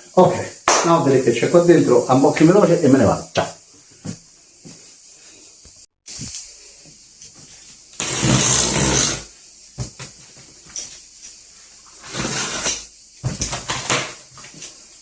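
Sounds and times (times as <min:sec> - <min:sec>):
cardboard box scraping and rustling: 0:08.0 - 0:09.3, 0:12.0 - 0:12.8.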